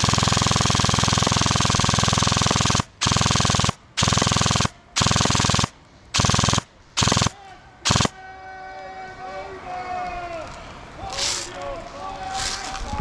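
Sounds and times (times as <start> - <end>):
airsoft gun firing bursts: 0.0 - 8.2.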